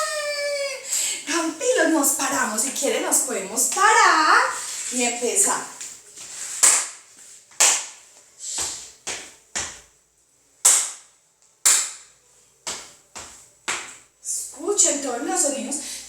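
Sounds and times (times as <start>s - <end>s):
hand claps and body slaps: 5.8s - 9.9s, 10.6s - 14.1s.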